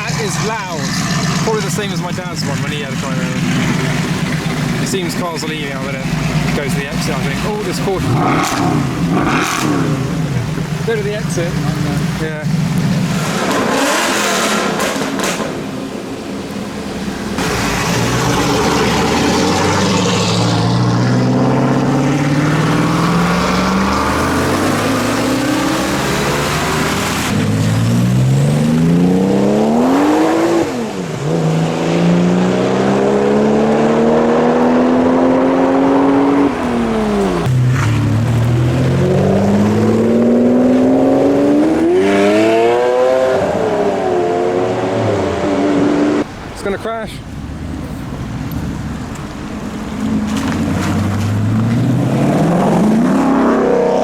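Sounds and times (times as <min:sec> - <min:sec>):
car engine accelerating: 0:00.0 - 0:54.0.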